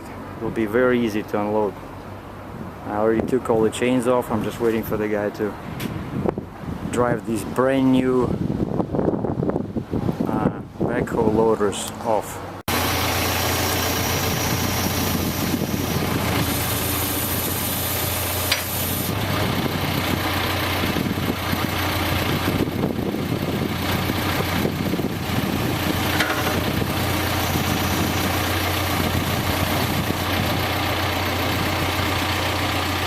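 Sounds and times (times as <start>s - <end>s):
heavy diesel engine idling: 12.7s - 33.0s.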